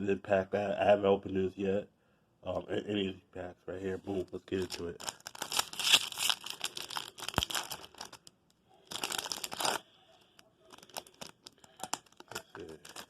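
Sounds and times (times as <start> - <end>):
foil wrapper crinkling and tearing: 4.4 - 9.9, 10.7 - 13.0.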